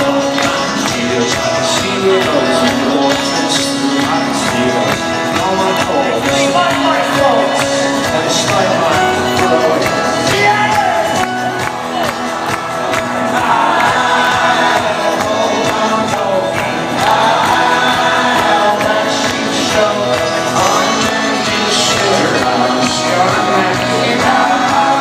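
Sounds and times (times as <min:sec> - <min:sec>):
crowd cheering: 0:00.0 - 0:25.0
crowd singing along: 0:00.0 - 0:25.0
live folk-rock band playing: 0:00.0 - 0:25.0.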